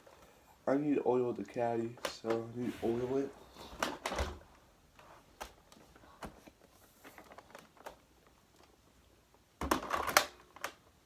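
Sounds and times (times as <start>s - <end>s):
faint clicks and light knocks: 1.4s - 2.6s.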